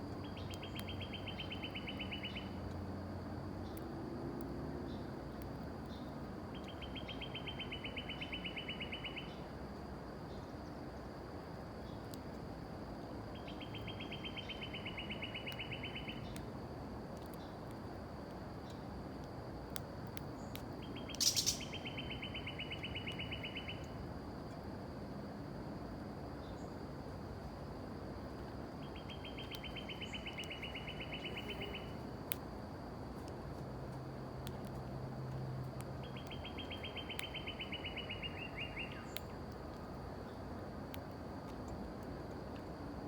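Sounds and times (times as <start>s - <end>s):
songbird trilling: 0.3s - 2.6s, 6.0s - 9.4s, 13.4s - 16.4s, 20.8s - 23.9s, 28.8s - 32.0s, 36.0s - 39.3s
faint high whine: 19.8s - 33.3s, 34.4s - 43.0s.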